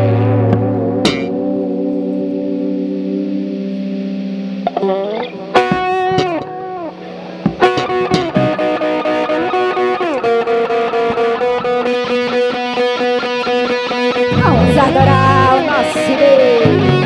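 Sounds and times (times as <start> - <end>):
electric guitar lead with bent notes: 0.0 - 17.0
band playing steady beat: 4.7 - 17.0.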